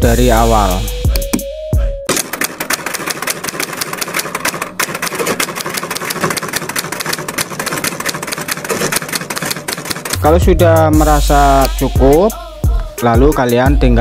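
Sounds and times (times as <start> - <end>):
typewriter keys clacking: 2.1 - 10.2.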